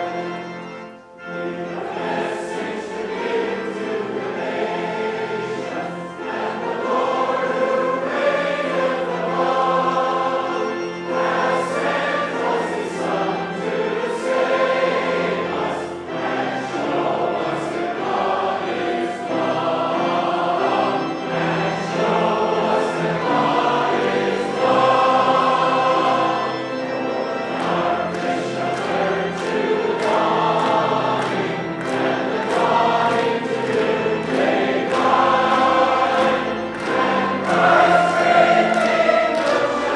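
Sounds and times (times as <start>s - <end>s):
church choir singing: 0.0s - 39.9s.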